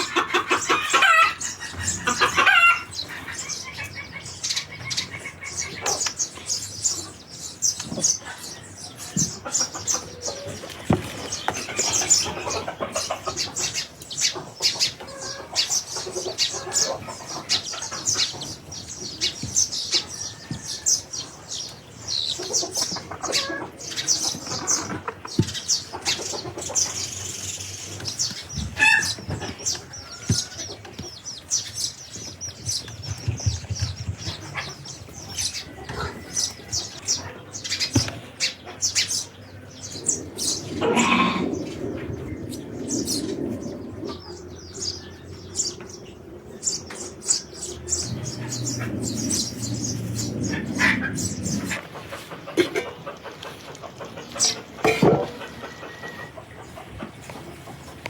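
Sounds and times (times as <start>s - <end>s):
small birds chirping: 0.0s - 58.0s
loud animal call: 40.8s - 41.6s.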